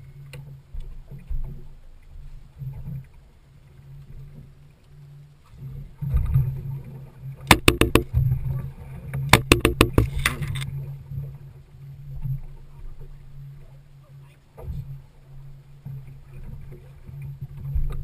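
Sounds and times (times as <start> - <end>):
sharp clicks or taps: 7.5 - 8.1, 9.4 - 10.3
boat motor humming: 7.5 - 8.2, 9.4 - 10.4.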